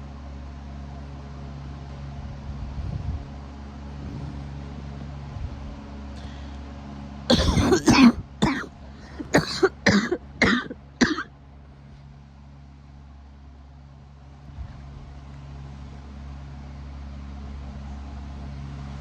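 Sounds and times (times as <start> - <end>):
person coughing: 7.3 - 11.3.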